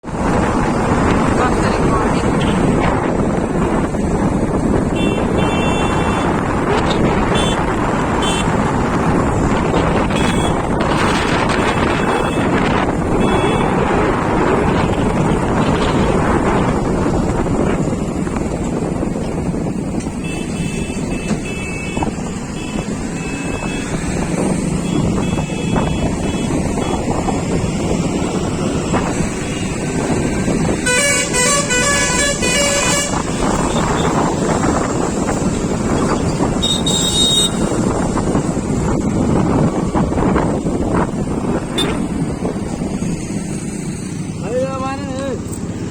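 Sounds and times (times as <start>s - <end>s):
steady rushing noise: 0.0s - 20.2s, 20.8s - 45.9s
wind buffeting microphone: 0.0s - 45.9s
pulsing multi-tone vehicle horn: 4.9s - 6.5s, 7.1s - 8.7s, 10.0s - 13.9s, 20.2s - 24.1s, 24.8s - 27.1s, 30.7s - 34.6s, 36.0s - 37.9s, 41.7s - 42.1s.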